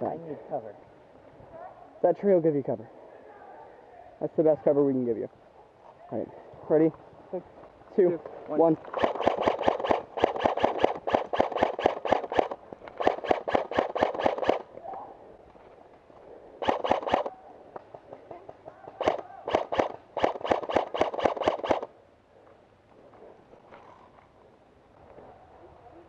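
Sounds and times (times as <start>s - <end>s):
airsoft guns firing bursts: 8.8s - 14.8s, 16.6s - 17.4s, 18.8s - 22.0s.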